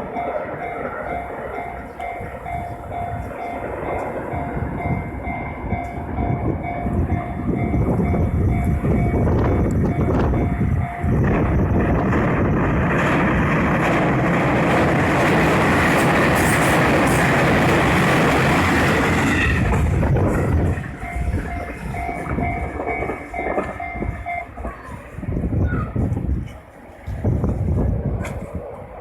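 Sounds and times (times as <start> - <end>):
two-tone crossing bell clanging: 0.0 - 25.5
train wheels on rails: 0.0 - 29.0.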